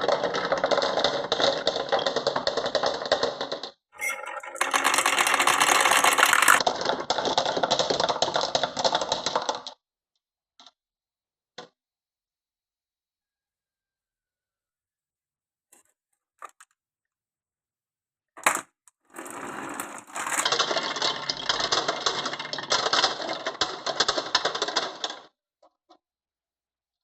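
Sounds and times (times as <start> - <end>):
marbles rolling down wooden run: 0.0 - 9.8, 18.4 - 25.3.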